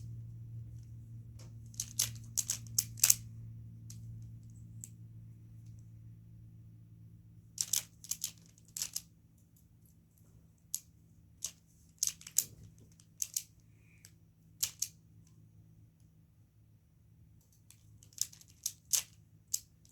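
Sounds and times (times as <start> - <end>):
puzzle cube plastic clicks: 1.7 - 3.2, 7.6 - 9.1, 11.4 - 13.6, 14.6 - 15.0, 17.7 - 19.9.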